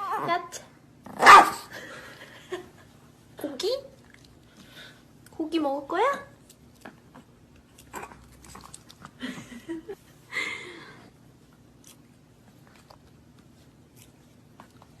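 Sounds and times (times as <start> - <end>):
animal chewing and crunching food: 6.4 - 9.3, 11.5 - 15.0.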